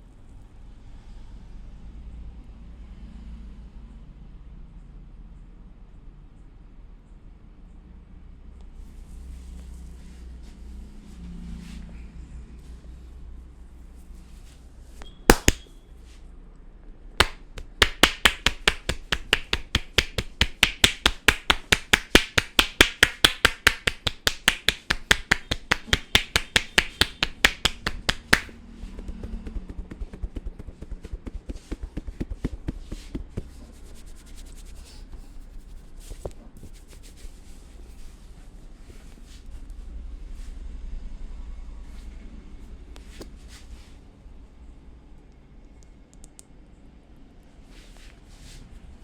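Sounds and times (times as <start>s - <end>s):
rapid sharp massage strikes: 15.3s - 15.6s, 17.2s - 35.7s
soft taps and rubbing: 17.2s - 38.2s.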